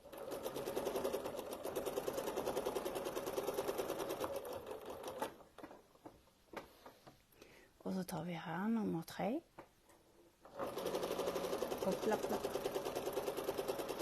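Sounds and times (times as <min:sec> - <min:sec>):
sewing machine stitching: 0:00.0 - 0:05.8, 0:10.4 - 0:14.0.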